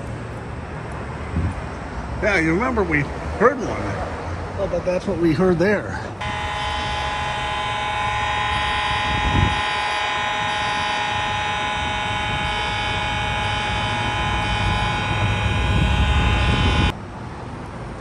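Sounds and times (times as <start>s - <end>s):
fire alarm horn buzzing: 6.2s - 17.0s.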